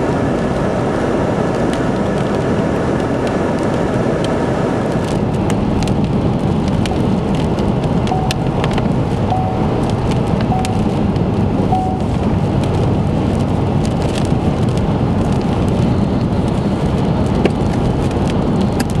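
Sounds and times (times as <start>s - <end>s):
low road and storm rumble: 0.0s - 19.0s
rain pelting a vehicle: 0.0s - 19.0s
short electronic beeps: 8.1s - 8.4s, 9.3s - 9.7s, 10.5s - 10.9s, 11.7s - 12.1s.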